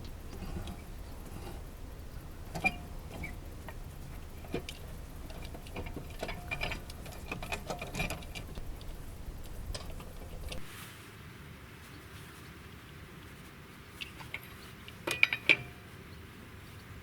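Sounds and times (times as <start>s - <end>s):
metal tools clinking: 0.0s - 10.7s.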